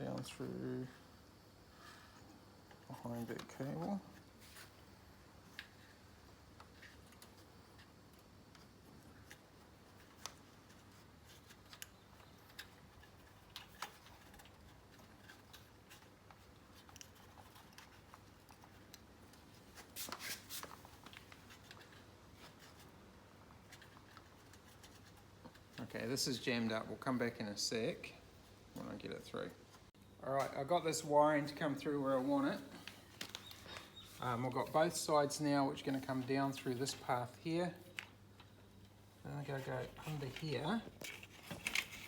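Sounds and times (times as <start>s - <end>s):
wire clicking and scraping: 6.6s - 26.2s.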